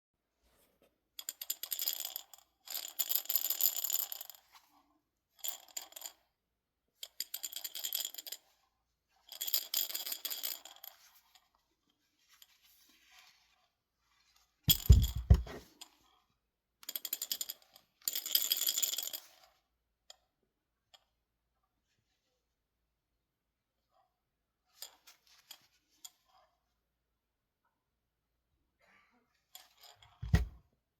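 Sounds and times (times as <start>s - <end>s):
toy rattle shaken: 14.7s - 15.5s
loud thump: 14.7s - 15.6s, 30.2s - 30.6s.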